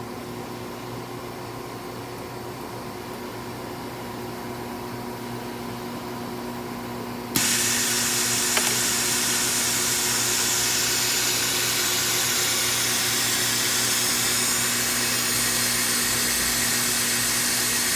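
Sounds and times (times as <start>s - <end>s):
machine running with rushing hiss: 7.4s - 17.9s
single click: 8.5s - 9.0s.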